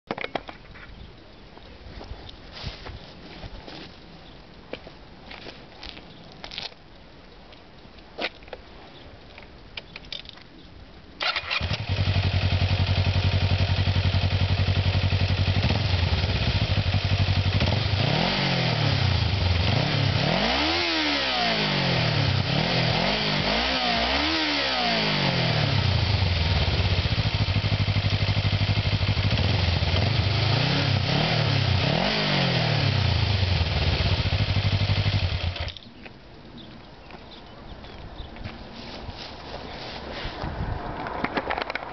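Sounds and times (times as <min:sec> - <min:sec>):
motorcycle engine idling and revving: 0:11.2 - 0:35.9.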